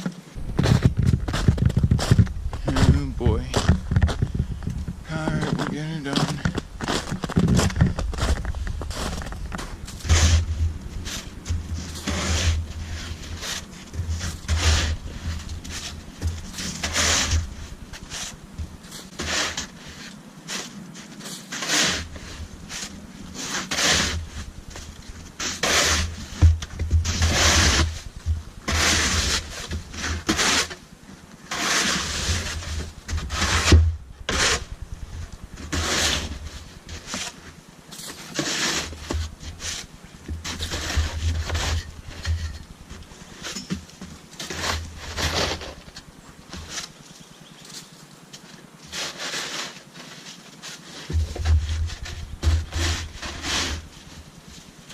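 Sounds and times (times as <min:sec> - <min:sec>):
snow shovel scraping snow: 0:00.0 - 0:48.0, 0:48.8 - 0:54.9.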